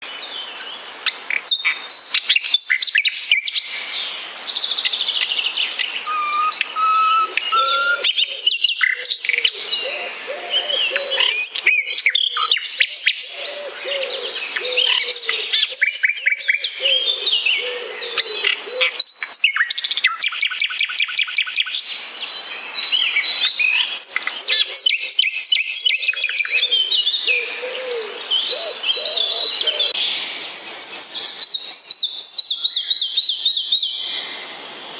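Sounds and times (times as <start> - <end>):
birds chirping and trilling: 4.5 - 34.9
low wavering bird notes: 6.0 - 8.1.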